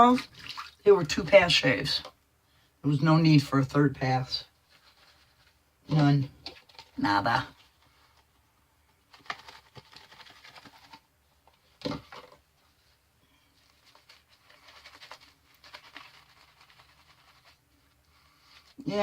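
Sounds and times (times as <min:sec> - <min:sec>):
shaving brush scrubbing lather: 0:13.9 - 0:17.6.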